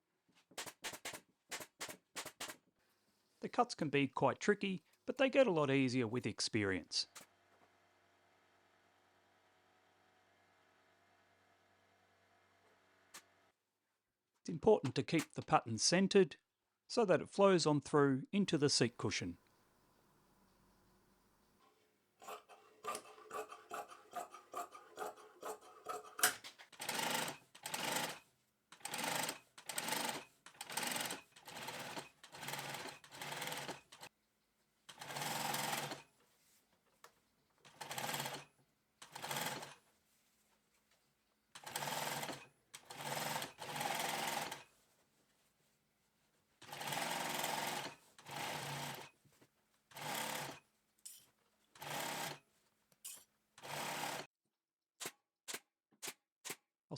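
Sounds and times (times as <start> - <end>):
sewing machine stitching: 0.6 - 2.6, 22.2 - 28.2, 28.8 - 34.1, 34.9 - 36.1, 37.7 - 39.8, 41.6 - 44.7, 46.6 - 49.1, 49.9 - 52.4, 53.1 - 54.3.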